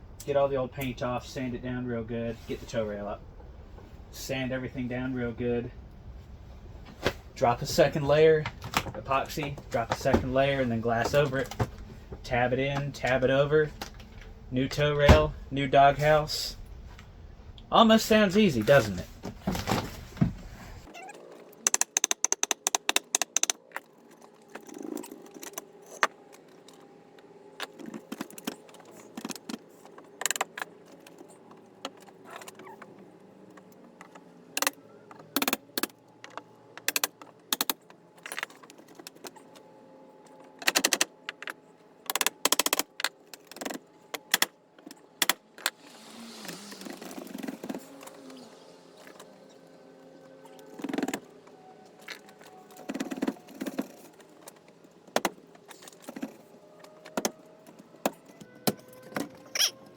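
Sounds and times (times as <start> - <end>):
hand tools clicking and knocking: 21.6 - 23.8.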